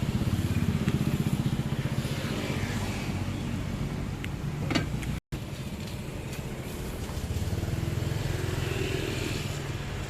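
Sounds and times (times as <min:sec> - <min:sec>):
vehicle engine humming: 0:00.0 - 0:10.0.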